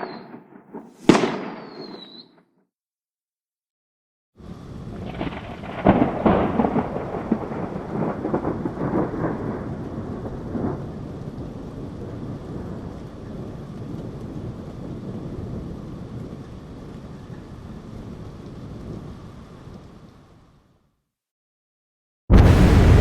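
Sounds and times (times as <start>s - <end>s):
rolling thunder: 0.0s - 0.4s, 4.5s - 19.5s, 22.3s - 23.0s
steady rain: 4.4s - 20.9s, 22.4s - 23.0s.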